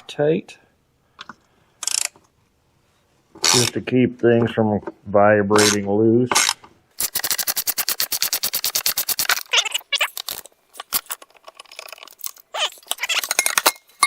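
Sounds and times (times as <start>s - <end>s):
ratchet wrench clicking: 6.4s - 9.4s
wrench rubbing: 6.4s - 14.0s.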